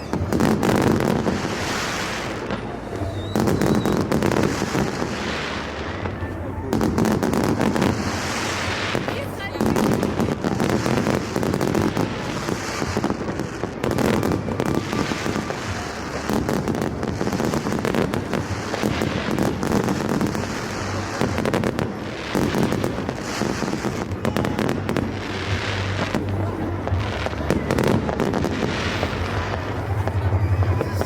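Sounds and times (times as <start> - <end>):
fireworks banging and crackling: 0.0 - 31.0.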